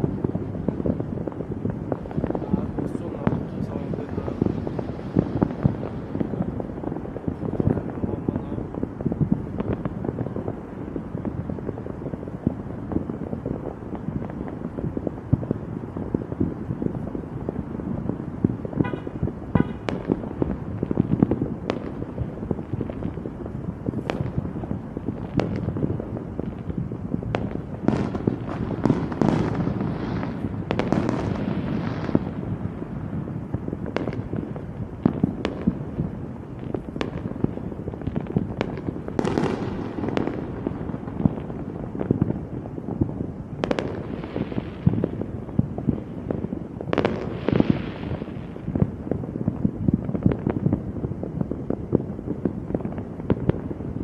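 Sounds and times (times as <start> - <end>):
crackling firework bursts: 0.0 - 54.0
fireworks banging: 0.0 - 54.0.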